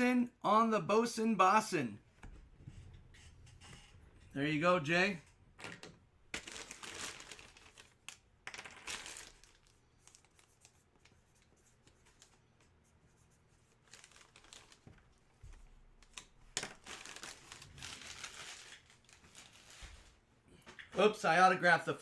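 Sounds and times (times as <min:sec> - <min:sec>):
packaging crinkling and rustling: 0:05.6 - 0:10.6, 0:13.8 - 0:20.2.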